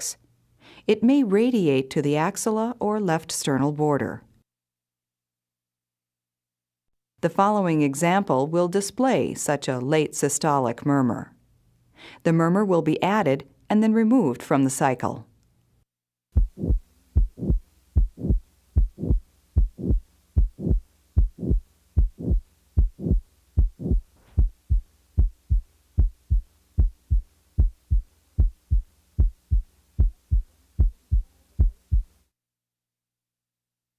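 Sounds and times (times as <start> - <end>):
blowing heart murmur: 16.4 - 32.1
heartbeat lub-dub: 16.4 - 32.1
faint steady hum: 16.4 - 32.3.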